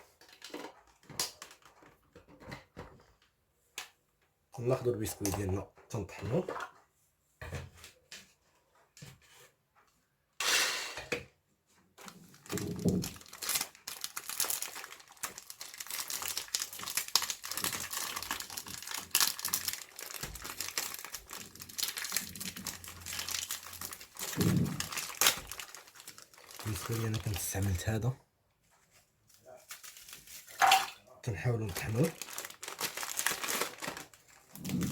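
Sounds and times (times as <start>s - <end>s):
plastic packaging crinkling: 0.0s - 2.0s, 12.0s - 28.2s, 29.3s - 34.9s
biscuits being crushed: 12.0s - 27.8s, 31.4s - 34.9s.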